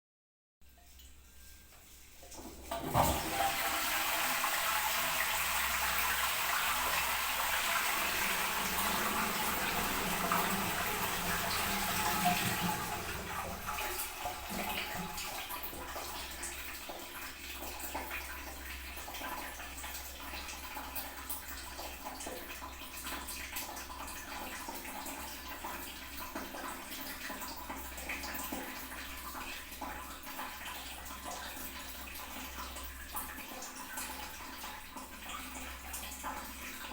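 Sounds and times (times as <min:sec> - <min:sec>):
toilet flushing: 0:00.9 - 0:36.9
toilet tank refilling: 0:00.9 - 0:36.9.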